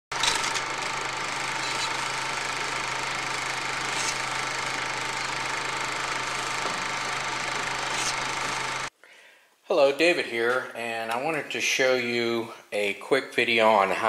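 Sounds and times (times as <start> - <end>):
machine running with hum: 0.1 - 8.9.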